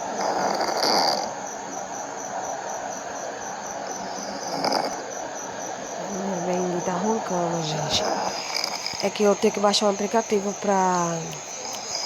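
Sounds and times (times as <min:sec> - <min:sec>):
crickets chirping: 0:00.0 - 0:12.0
cat snoring through nose: 0:00.2 - 0:01.3, 0:04.3 - 0:05.0, 0:07.7 - 0:09.1.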